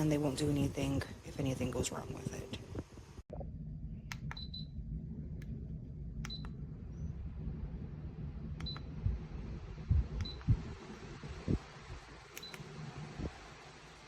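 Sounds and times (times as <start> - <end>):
steady low rumble: 0.0 - 14.0
high electronic beep: 4.4 - 4.8.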